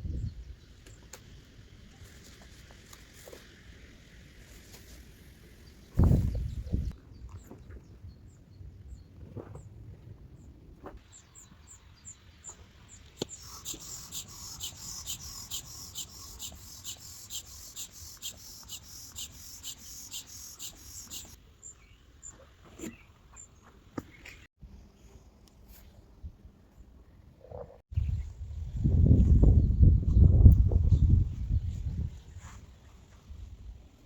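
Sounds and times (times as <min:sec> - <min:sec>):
wind on microphone: 0:00.0 - 0:00.6, 0:05.9 - 0:07.0, 0:27.9 - 0:32.7
high chirping call: 0:13.2 - 0:21.4.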